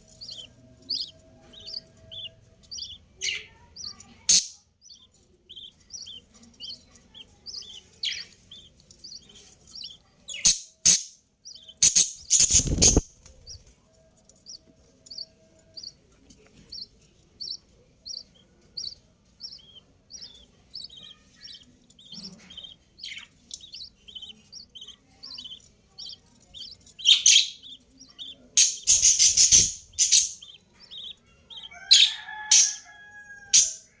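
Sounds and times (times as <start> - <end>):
budgerigars chirping: 0.0 - 13.6, 14.4 - 34.0.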